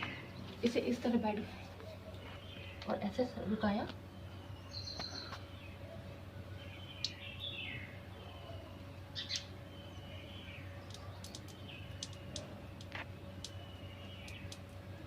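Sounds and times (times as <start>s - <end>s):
birds chirping: 0.0s - 15.0s
faint steady hum: 0.0s - 15.0s.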